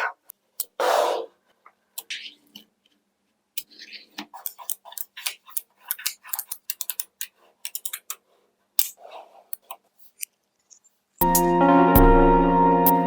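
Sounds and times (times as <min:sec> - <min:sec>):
music: 0:11.2 - 0:13.0.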